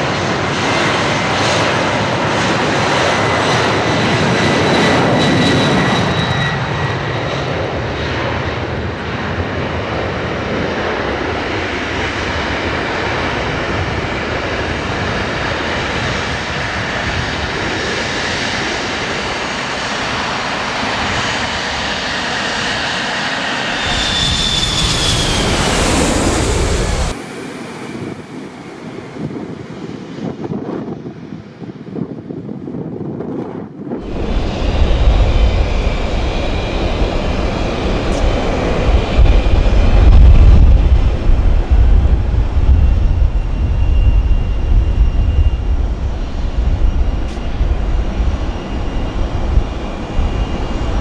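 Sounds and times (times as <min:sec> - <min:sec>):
wind noise on microphone: 0:00.0 - 0:27.2, 0:27.8 - 0:51.0
jet engines roaring and whining: 0:00.0 - 0:51.0.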